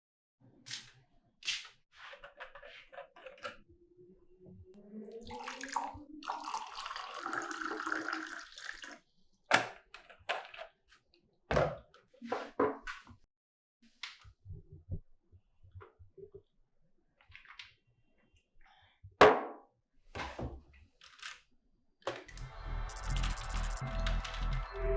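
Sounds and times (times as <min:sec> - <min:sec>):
running water: 0:05.1 - 0:09.0.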